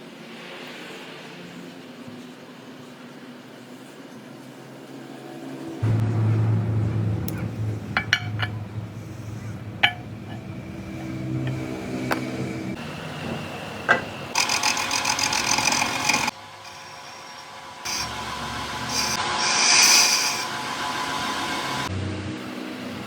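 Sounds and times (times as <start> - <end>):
machine humming: 5.8 - 23.0
harsh high-pitched metallic noise: 7.5 - 23.0.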